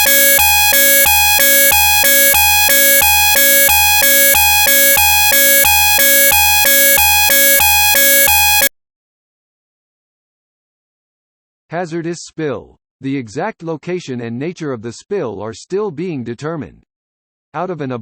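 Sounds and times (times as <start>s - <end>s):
two-tone emergency alert tone: 0.0s - 8.7s.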